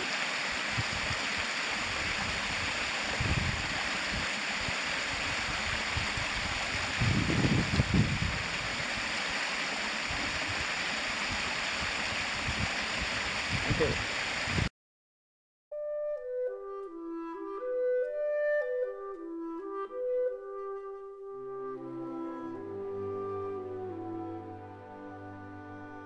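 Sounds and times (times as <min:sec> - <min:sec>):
waterfall rushing: 0:00.0 - 0:14.7.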